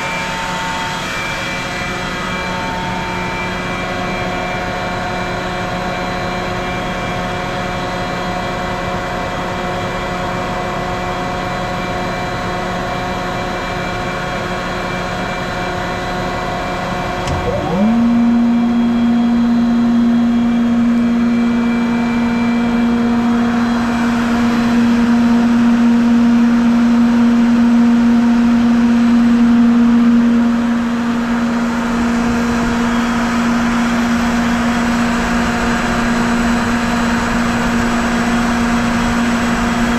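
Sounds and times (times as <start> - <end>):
air compressor whine: 0.0 - 39.9
steady machine hum: 16.1 - 39.9.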